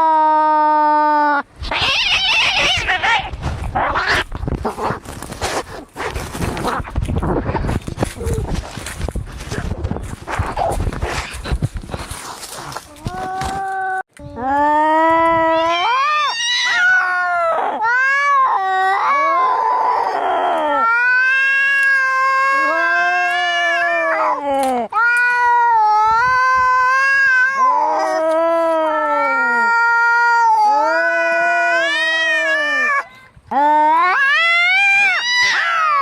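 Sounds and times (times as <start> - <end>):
cats yowling: 1.6 - 4.3, 15.4 - 24.4, 25.0 - 36.0
cat hissing: 1.6 - 7.0.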